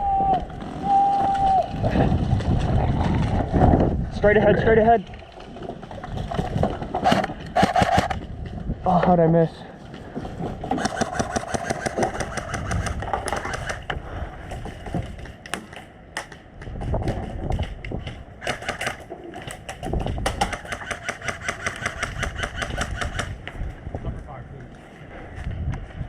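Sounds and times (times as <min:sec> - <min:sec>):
airsoft guns firing bursts: 0:10.7 - 0:13.8, 0:18.4 - 0:19.0, 0:20.2 - 0:23.4.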